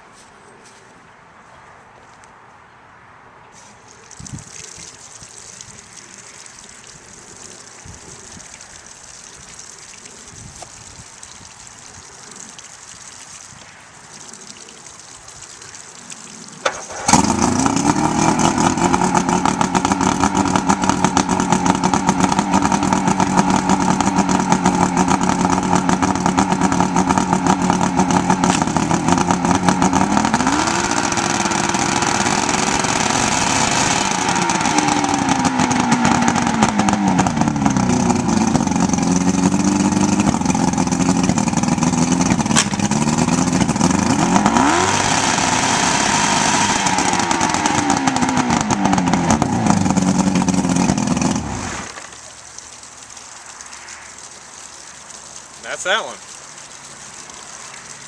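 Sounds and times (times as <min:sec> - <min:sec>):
outboard motor starting and revving: 0:16.6 - 0:52.2.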